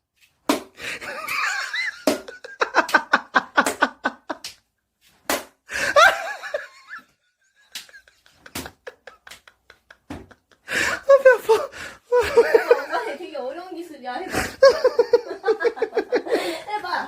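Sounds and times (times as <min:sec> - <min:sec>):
sharp slaps: 0:00.4 - 0:05.6, 0:07.7 - 0:10.4
laughter in rhythmic bursts: 0:00.8 - 0:04.4, 0:05.7 - 0:13.2, 0:14.3 - 0:17.0.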